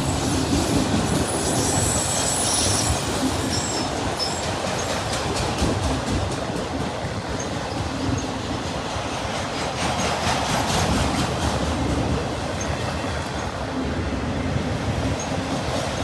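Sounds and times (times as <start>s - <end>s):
train wheels clattering over rails: 0.0s - 16.0s.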